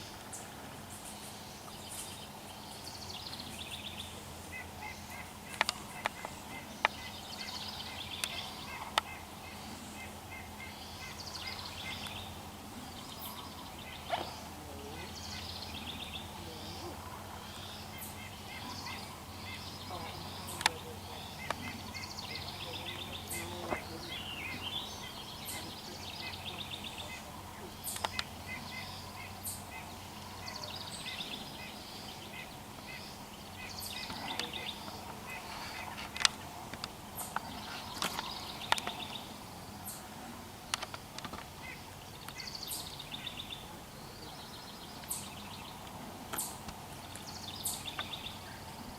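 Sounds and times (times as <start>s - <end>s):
birds trilling: 0.0s - 48.9s
steady low hum: 0.0s - 48.9s
sharp clicks: 27.9s - 28.3s.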